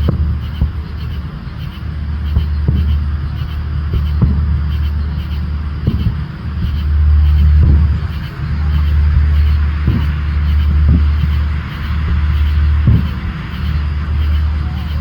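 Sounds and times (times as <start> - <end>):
fireworks dull thuds: 0.0 - 15.0
steady low rumble: 0.0 - 15.0.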